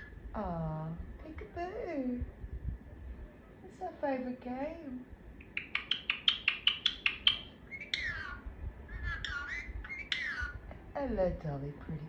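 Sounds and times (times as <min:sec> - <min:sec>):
parrot chirping: 0:05.4 - 0:10.7.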